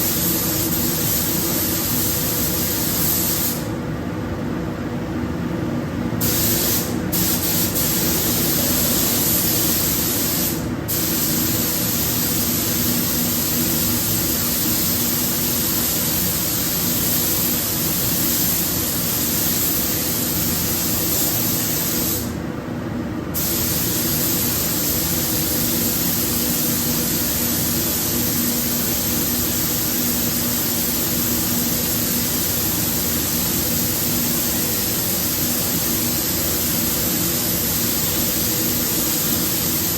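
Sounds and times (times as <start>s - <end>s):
paint spray gun hissing: 0.0s - 3.7s, 6.2s - 22.3s, 23.4s - 39.9s.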